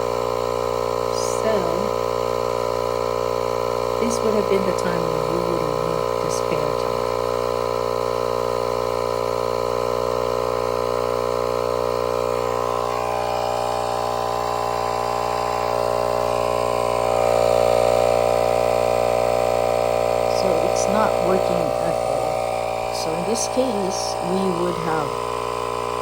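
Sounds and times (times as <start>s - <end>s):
tire inflator compressor running: 0.0s - 26.0s.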